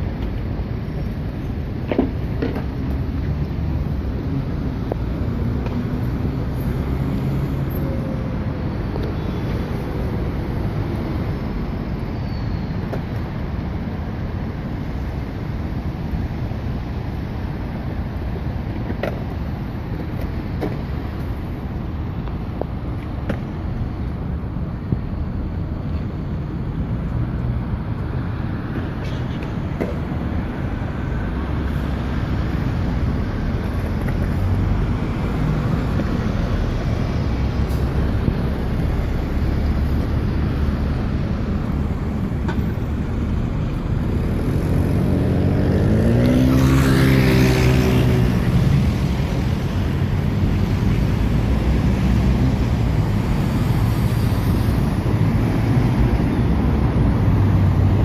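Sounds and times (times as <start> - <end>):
city road traffic rumble: 0.0 - 58.0
vehicle passing close: 30.4 - 58.0.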